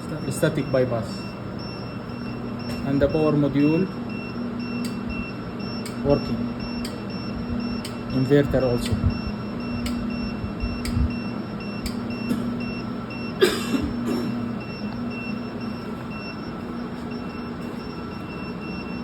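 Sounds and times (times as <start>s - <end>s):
faint high beeps: 0.0s - 13.3s
steady electrical hum: 0.0s - 19.0s
sharp clicks: 11.8s - 12.0s.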